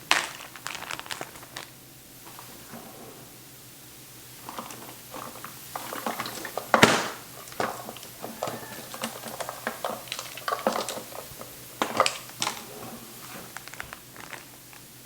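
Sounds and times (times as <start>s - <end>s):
utensils and dishes clattering: 4.4s - 14.8s.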